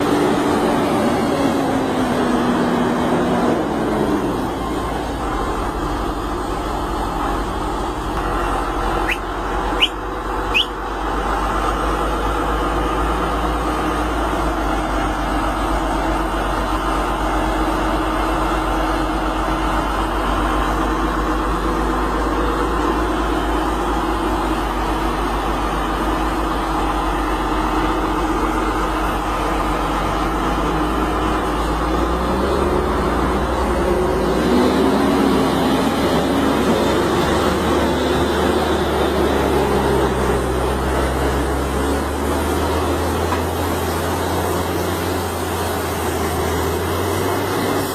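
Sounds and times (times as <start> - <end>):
diesel truck engine running: 0.0 - 47.9
short high squeaks: 9.0 - 10.8.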